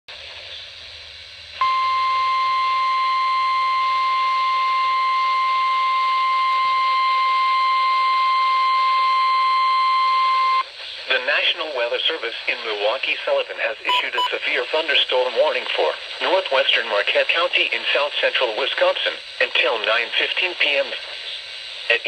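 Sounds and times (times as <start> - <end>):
faint radio hiss: 0.1 - 4.2, 10.6 - 22.0
high-pitched alarm tone: 13.9 - 14.4.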